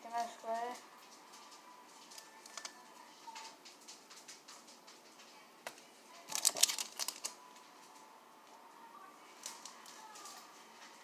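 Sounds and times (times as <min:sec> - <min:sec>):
plastic containers clicking: 0:06.3 - 0:07.4.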